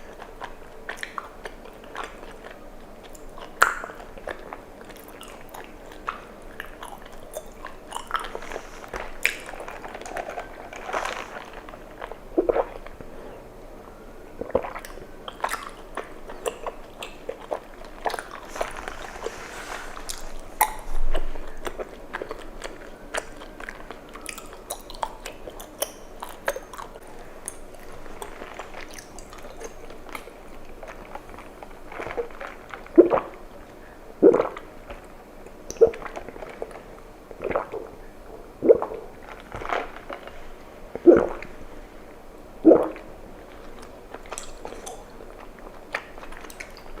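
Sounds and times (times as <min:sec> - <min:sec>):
chewing tapioca pearls: 0:00.0 - 0:47.0
wet sticky mouth clicks: 0:20.6 - 0:22.5.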